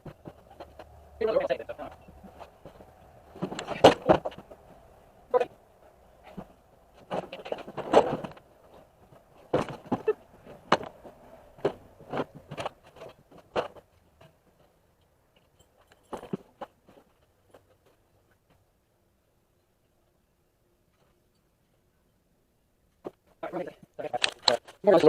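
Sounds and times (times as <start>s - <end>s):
objects knocking and clattering: 1.8s - 4.8s, 6.2s - 18.0s.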